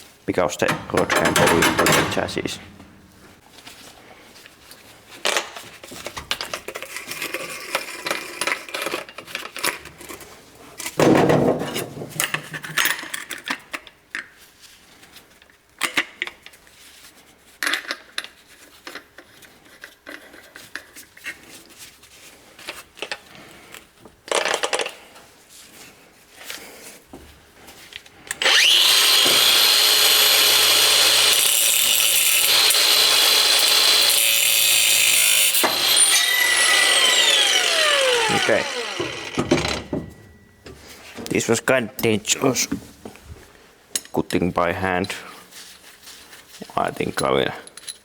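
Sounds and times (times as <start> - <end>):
metal tools clinking and scraping: 0.5 - 3.1, 46.7 - 48.0.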